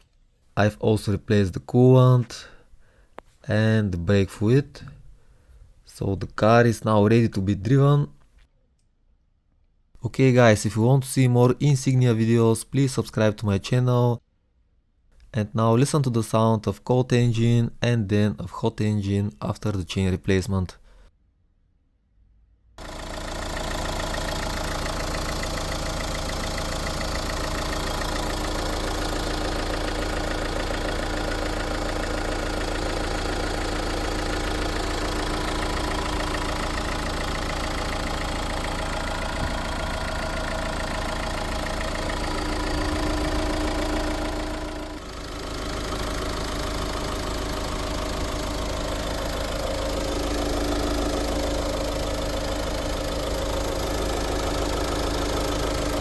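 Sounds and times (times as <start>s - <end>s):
diesel engine idling: 22.8s - 56.0s.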